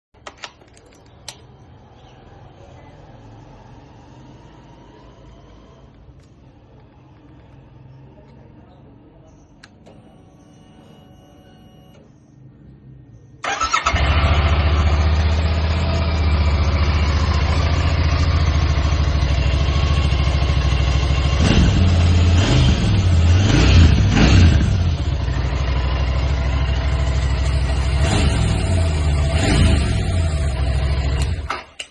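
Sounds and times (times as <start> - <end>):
motorcycle engine starting and idling: 13.4 - 31.9.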